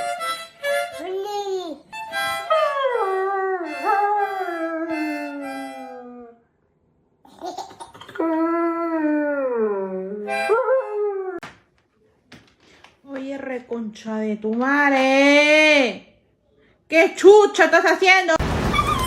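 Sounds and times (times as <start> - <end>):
dog howling: 2.5 - 6.4.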